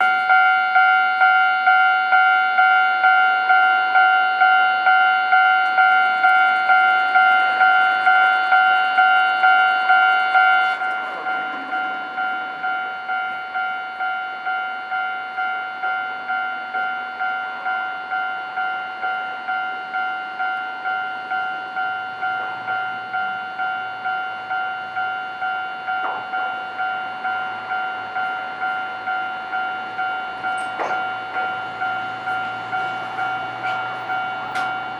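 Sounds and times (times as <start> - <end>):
level-crossing warning bell: 0.0 - 34.9.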